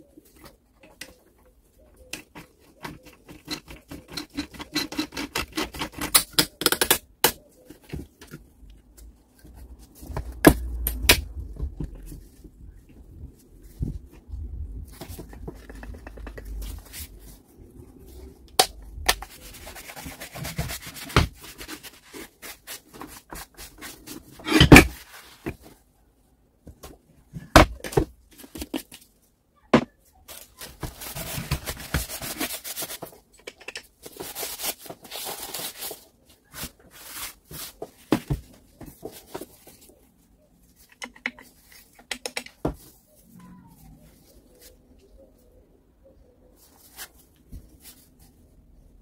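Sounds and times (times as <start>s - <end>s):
hands rubbing and scraping: 11.4s - 25.7s.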